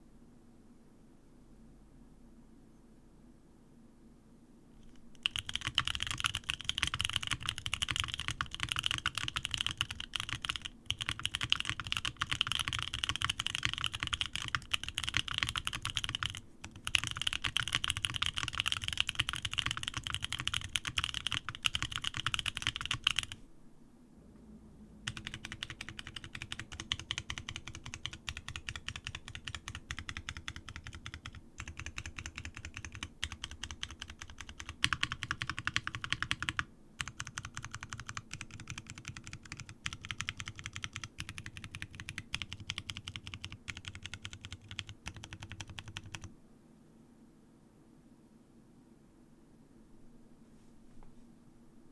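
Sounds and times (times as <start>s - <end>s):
mechanical keyboard typing: 4.8s - 23.4s, 25.1s - 46.3s.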